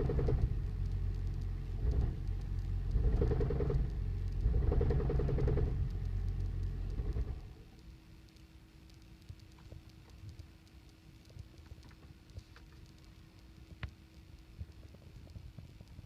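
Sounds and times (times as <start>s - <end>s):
engine running rough: 0.0s - 7.5s
faint steady hum: 0.0s - 16.0s.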